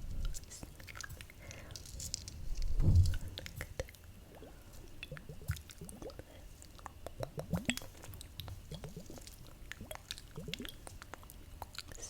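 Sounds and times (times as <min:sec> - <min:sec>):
wet mouth clicks and smacks: 0:05.0 - 0:12.0.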